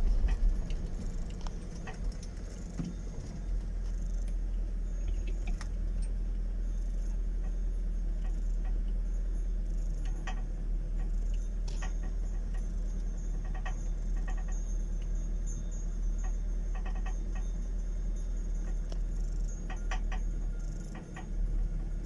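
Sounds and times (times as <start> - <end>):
car engine droning: 0.0 - 22.0
rattling clicks and jingles: 9.7 - 22.0.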